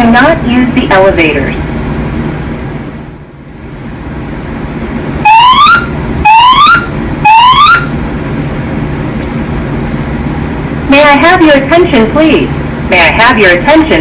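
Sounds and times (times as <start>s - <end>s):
steady low hum: 0.0s - 14.0s
fire alarm whoop tones: 5.2s - 8.0s.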